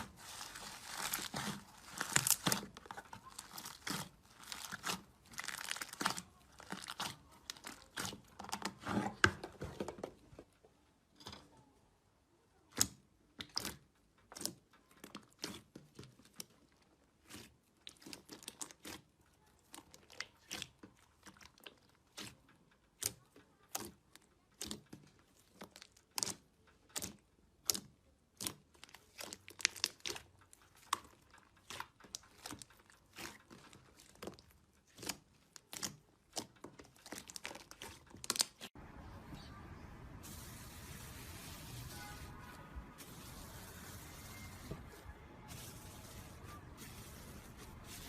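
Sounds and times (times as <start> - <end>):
slime popping and crackling: 0.0 - 9.0, 12.7 - 38.8.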